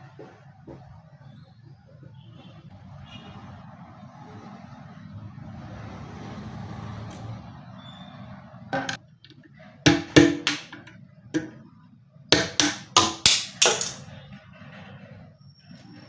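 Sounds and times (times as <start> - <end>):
knocks on wooden cabinet: 9.9 - 11.6.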